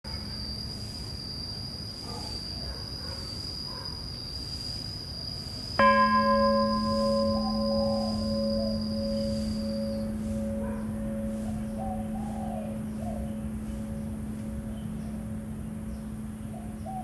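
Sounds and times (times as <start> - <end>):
high-pitched insect trill: 0.1 - 17.0
temple bell ringing: 5.8 - 16.5.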